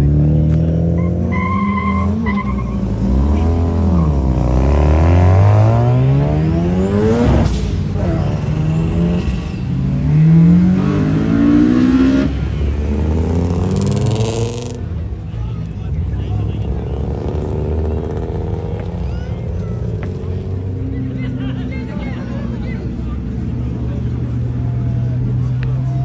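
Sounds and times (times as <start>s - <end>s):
car engine revving and accelerating: 0.0s - 15.2s, 16.2s - 21.3s.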